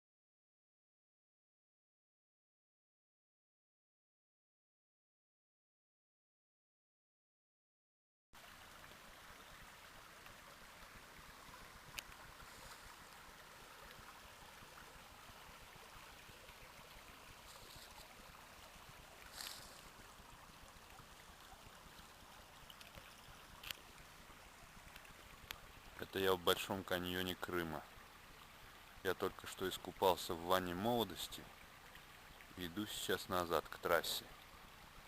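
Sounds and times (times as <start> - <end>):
small mountain stream rushing: 8.4 - 35.0.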